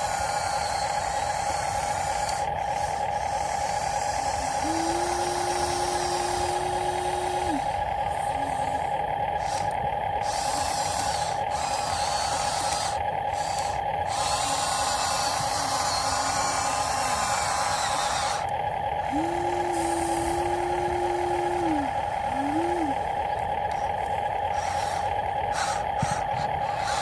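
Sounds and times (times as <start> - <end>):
high motor whine: 0.0 - 27.0
second motor spinning up: 0.0 - 27.0
hiss: 24.5 - 27.0.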